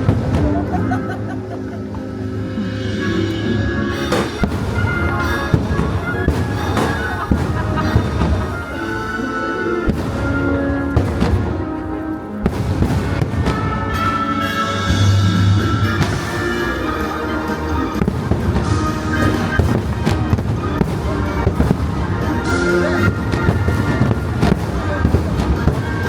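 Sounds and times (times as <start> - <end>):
fireworks bangs: 0.0 - 1.0, 3.9 - 26.0
loud music: 0.0 - 26.0.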